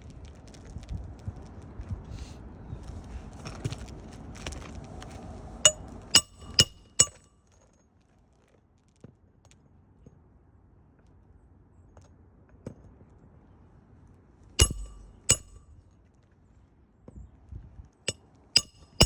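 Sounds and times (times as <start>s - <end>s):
sharp metal-on-metal strikes: 5.7s - 7.2s, 14.6s - 15.6s, 18.6s - 19.0s.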